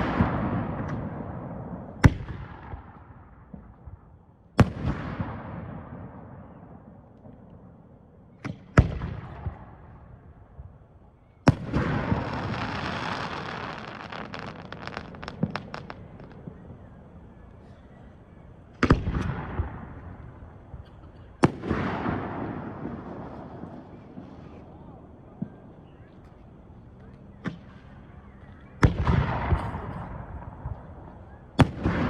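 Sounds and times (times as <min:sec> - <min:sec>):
fireworks bangs with rumbling echo: 0:00.0 - 0:17.3, 0:18.7 - 0:32.0
fireworks crackling: 0:11.5 - 0:17.6, 0:18.5 - 0:32.0.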